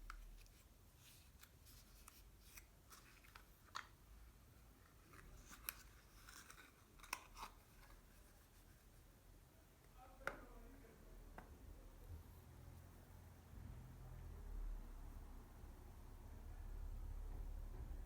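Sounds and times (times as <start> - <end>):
packaging handling clicks and rubs: 0.0 - 4.0, 4.9 - 8.3.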